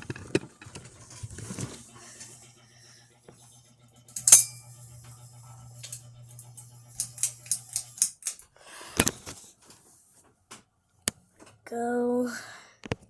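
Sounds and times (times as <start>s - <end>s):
ceiling fan motor humming: 0.7s - 8.4s
sharp clicks and taps: 7.0s - 8.4s.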